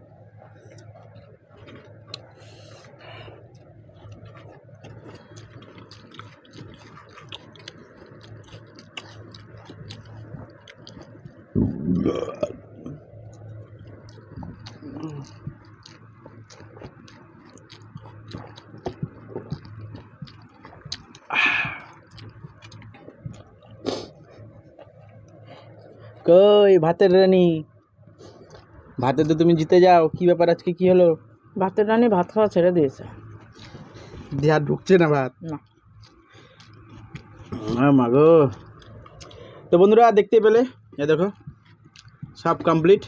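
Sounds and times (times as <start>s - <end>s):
person chewing food: 0.3s - 26.3s, 28.1s - 29.0s, 33.0s - 39.7s, 40.7s - 43.0s
person burping: 11.6s - 13.0s, 21.3s - 21.9s, 37.5s - 37.8s.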